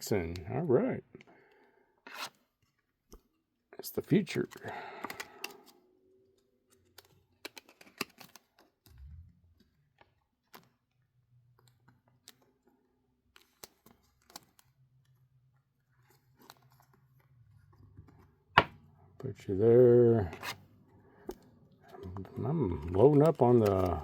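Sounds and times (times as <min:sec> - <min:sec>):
cards clicking on table: 0:22.8 - 0:24.0.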